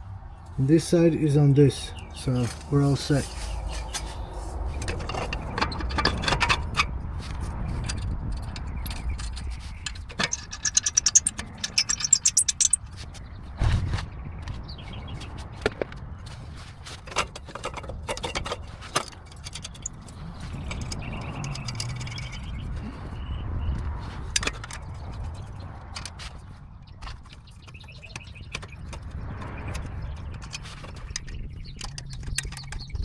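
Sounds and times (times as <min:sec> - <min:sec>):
metal clinking and scraping: 0:02.2 - 0:13.0, 0:17.0 - 0:22.8
rapid clicks: 0:07.8 - 0:12.8.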